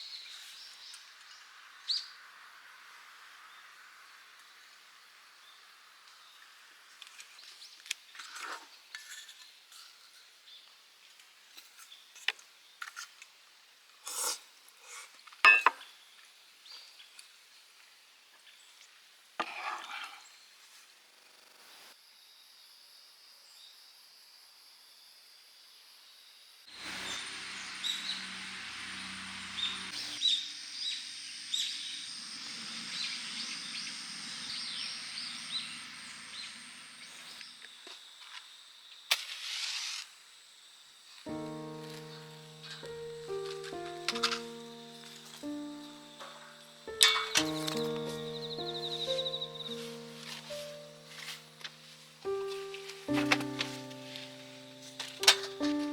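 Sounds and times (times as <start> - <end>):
distant engine hum: 26.8 - 30.2
small birds chirping: 41.3 - 55.9
handling noises and clicks: 49.9 - 55.9.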